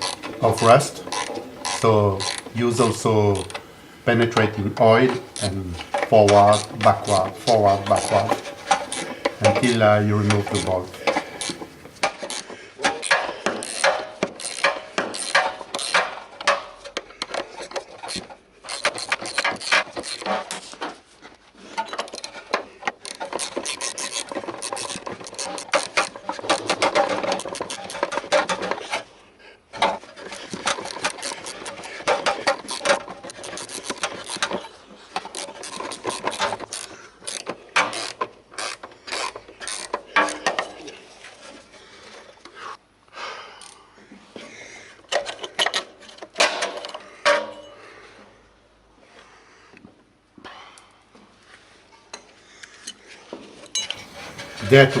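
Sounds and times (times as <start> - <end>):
ratchet wrench clicking: 0.0 - 3.6, 13.0 - 16.2.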